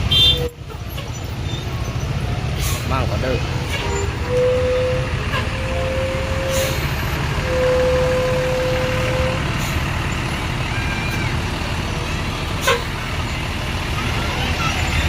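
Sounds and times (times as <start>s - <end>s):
flute-like bus horn note: 0.0s - 0.8s, 3.6s - 9.7s, 12.6s - 13.0s
bus engine rumble: 0.0s - 15.0s.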